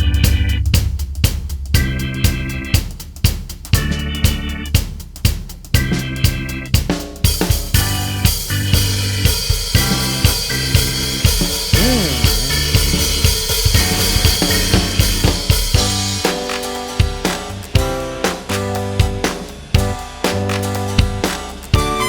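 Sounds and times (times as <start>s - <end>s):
swooping effect: 0.0s - 2.9s, 11.7s - 12.9s
upbeat music with drum beat: 0.0s - 22.0s.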